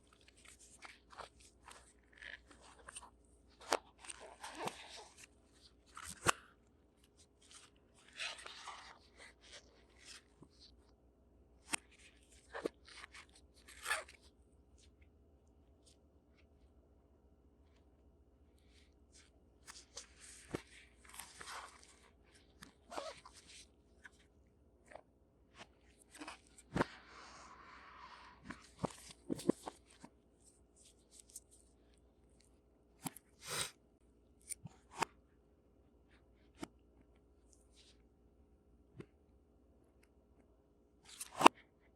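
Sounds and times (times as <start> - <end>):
short scrape: 33.4 - 33.8.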